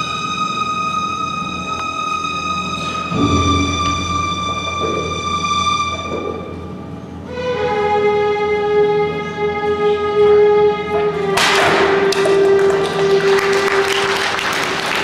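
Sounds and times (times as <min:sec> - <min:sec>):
music of long held notes: 0:00.0 - 0:15.0
audience applause: 0:12.0 - 0:15.0.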